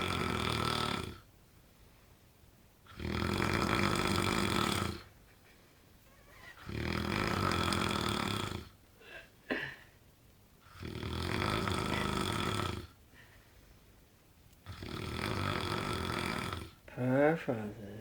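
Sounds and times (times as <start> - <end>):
man snoring loudly: 0.0 - 1.2, 2.9 - 5.1, 6.6 - 8.8, 10.7 - 13.0, 14.7 - 16.8.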